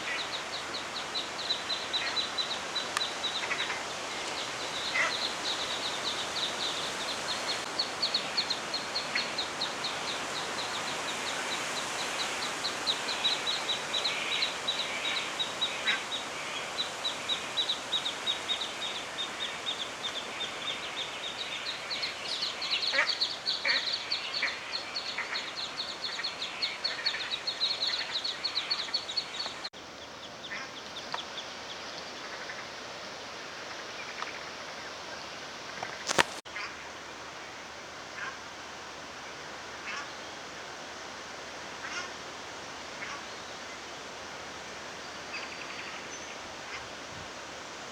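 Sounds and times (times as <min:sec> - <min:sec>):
ducks chattering: 0:04.9 - 0:05.9.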